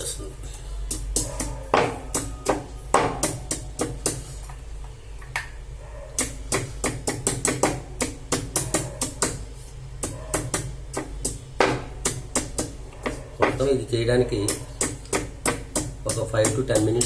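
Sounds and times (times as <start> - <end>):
pestle pounding in a mortar: 0.9 - 4.3, 6.2 - 13.7, 14.4 - 17.0.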